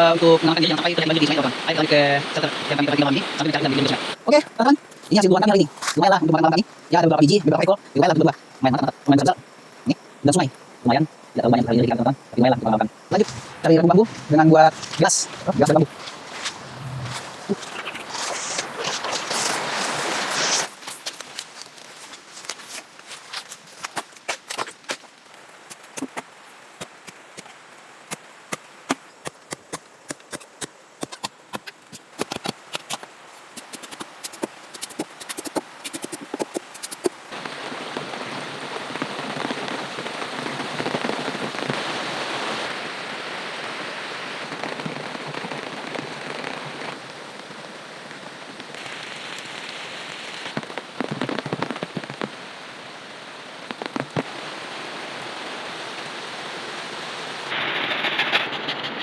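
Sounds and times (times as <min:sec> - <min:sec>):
downpour and running water: 0:00.0 - 0:59.0
raindrops tapping on surface: 0:14.8 - 0:41.9, 0:44.4 - 0:47.5, 0:48.1 - 0:52.5, 0:53.6 - 0:54.4.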